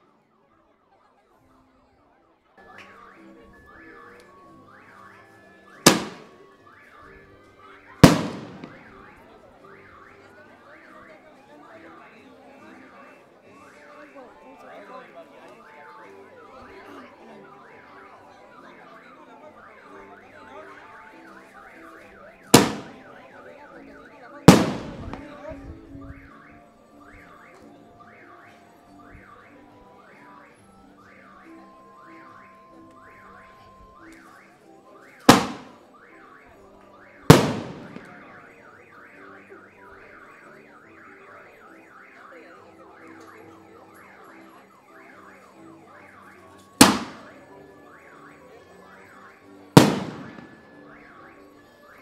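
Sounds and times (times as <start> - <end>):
firework bomb bangs: 5.9 - 6.3, 8.0 - 8.9, 22.6 - 23.0, 24.5 - 25.4, 35.3 - 35.8, 37.3 - 38.3, 46.8 - 47.3, 49.8 - 50.5
car alarm warbling: 8.1 - 9.2, 35.0 - 51.7.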